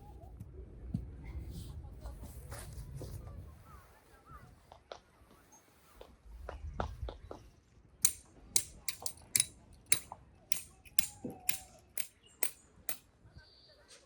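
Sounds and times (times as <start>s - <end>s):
sharp clicks: 8.0s - 13.0s.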